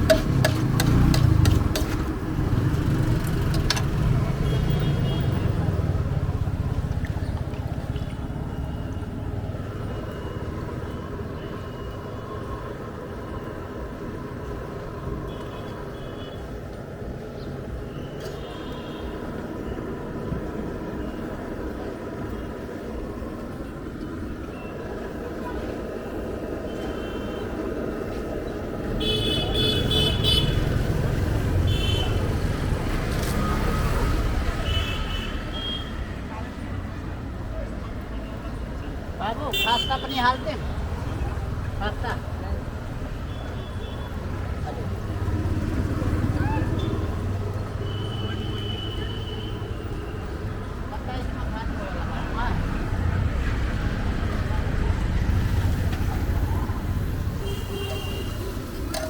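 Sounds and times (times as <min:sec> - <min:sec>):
vehicle engine rumbling: 0:00.0 - 0:13.4, 0:36.0 - 0:59.0
street traffic: 0:00.0 - 0:59.0
vehicle horns honking: 0:28.9 - 0:30.8, 0:31.6 - 0:32.2, 0:39.4 - 0:40.6, 0:47.8 - 0:49.8, 0:57.3 - 0:59.0.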